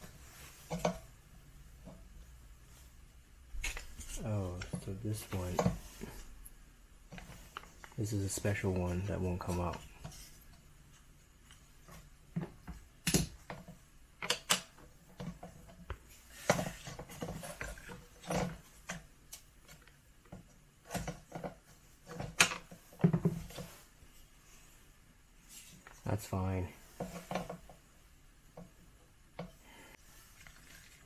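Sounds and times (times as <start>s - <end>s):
plastic parts clicking and scraping: 11.4s - 23.8s.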